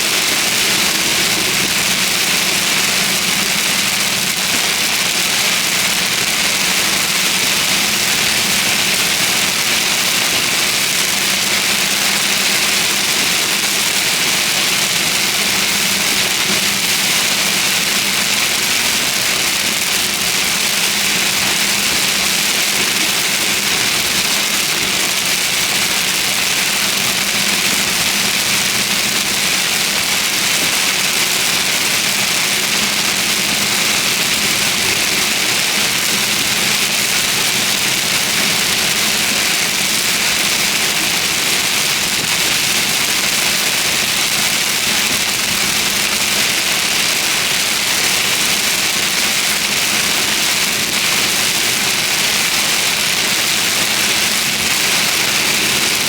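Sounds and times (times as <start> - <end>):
heavy rain hitting a vehicle: 0.0 - 56.0.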